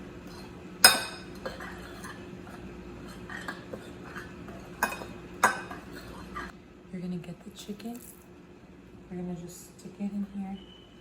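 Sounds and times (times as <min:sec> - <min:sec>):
utensil clinking against a bowl: 0:00.3 - 0:06.5.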